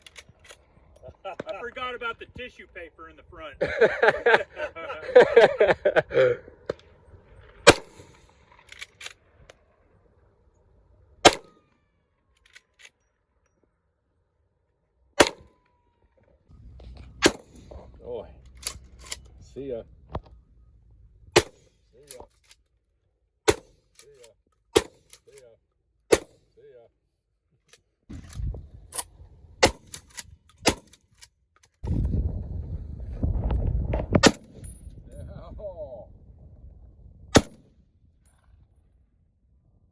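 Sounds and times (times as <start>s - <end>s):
gunshots: 6.6s - 9.0s, 11.2s - 11.6s, 15.2s - 15.5s, 17.2s - 17.8s, 21.4s - 21.7s, 34.2s - 34.6s, 37.3s - 37.6s
low rumble: 31.8s - 38.9s.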